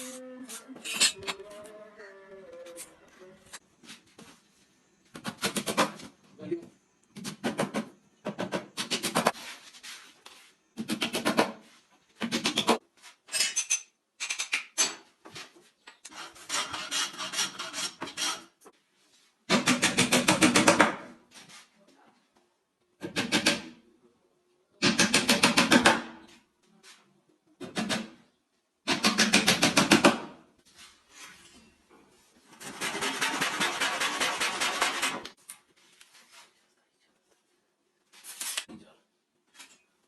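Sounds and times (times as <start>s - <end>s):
wood being rasped by hand: 16.1s - 18.5s.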